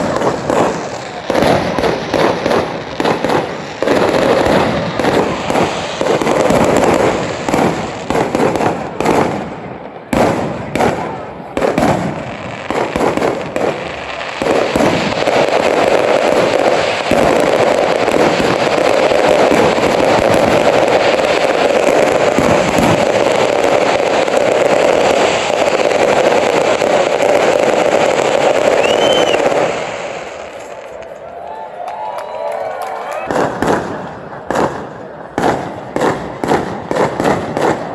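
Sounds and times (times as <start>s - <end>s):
fireworks bangs and crackles: 0.0s - 37.9s.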